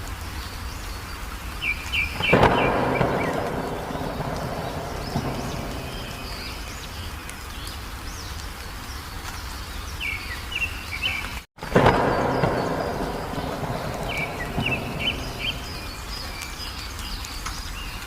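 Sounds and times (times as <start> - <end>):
songbirds chirping: 0.0 - 18.0
steady rain-like hiss: 0.0 - 18.0
loud rushing: 2.2 - 7.1, 11.6 - 16.4.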